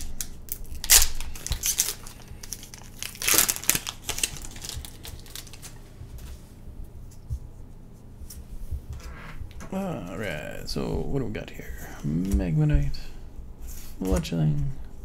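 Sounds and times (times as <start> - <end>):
foil wrapper crinkling: 0.0 - 5.9.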